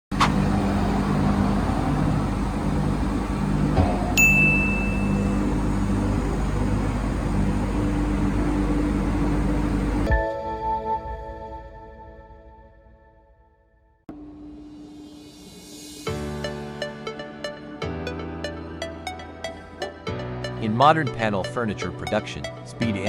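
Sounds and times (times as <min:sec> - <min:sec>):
high steady whine: 0:00.1 - 0:10.1
ringing chime: 0:04.2 - 0:05.6.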